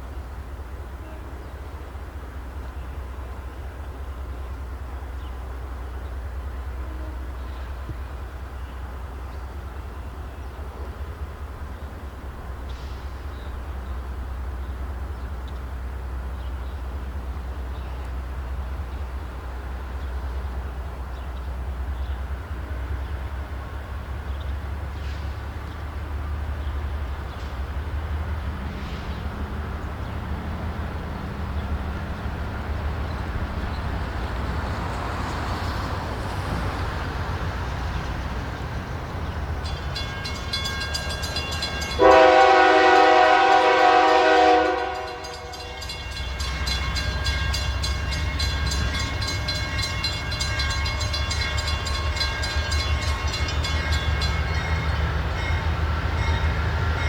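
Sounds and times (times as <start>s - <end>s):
locomotive low rumble: 0.0s - 57.0s
air horn blast: 42.0s - 45.6s.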